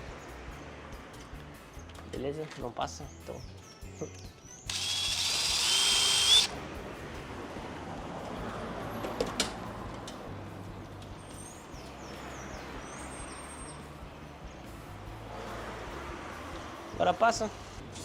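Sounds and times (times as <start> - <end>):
electric drill running: 4.7 - 6.6.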